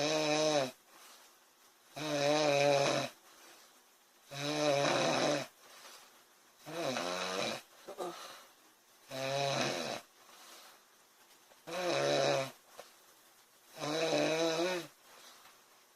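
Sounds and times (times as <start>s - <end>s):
woman snoring: 0.0s - 0.8s, 2.0s - 3.2s, 4.3s - 5.5s, 6.6s - 8.2s, 9.1s - 10.1s, 11.7s - 12.6s, 13.8s - 15.0s
short snoring sputter: 4.3s - 5.5s.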